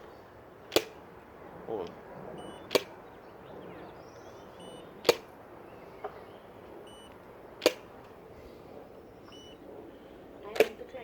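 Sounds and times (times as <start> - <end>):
photo flash popping: 2.6 - 3.0, 5.0 - 5.3, 7.0 - 7.9.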